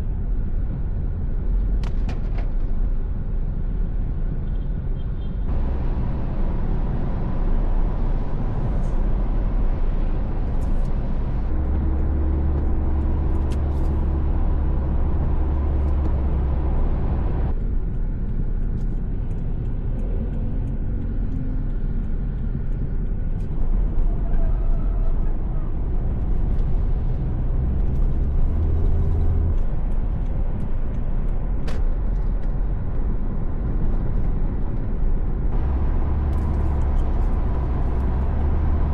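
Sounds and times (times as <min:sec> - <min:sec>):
car engine and road noise: 0:00.0 - 0:38.9.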